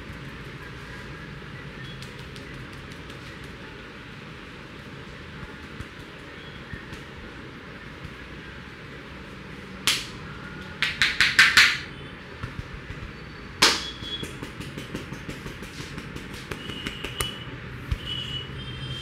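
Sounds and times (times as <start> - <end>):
hands slapping a head: 9.8 - 10.2, 10.8 - 11.9, 13.6 - 17.4.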